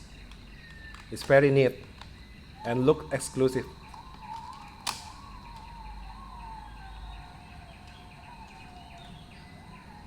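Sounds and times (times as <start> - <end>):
faint siren wailing: 0.3 - 10.0
sharp click: 3.9 - 5.7.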